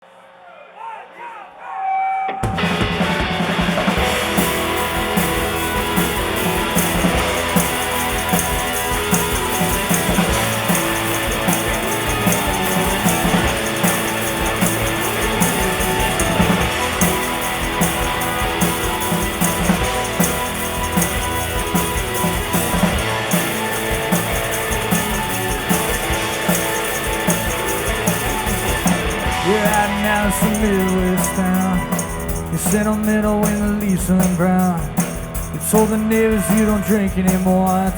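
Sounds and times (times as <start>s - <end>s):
drum kit steady beat: 2.4s - 37.9s
live rock band playing: 2.4s - 37.9s.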